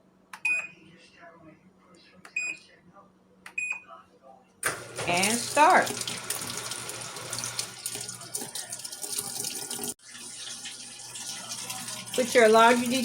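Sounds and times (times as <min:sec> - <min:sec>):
water running into washing machine: 0:04.7 - 0:13.0.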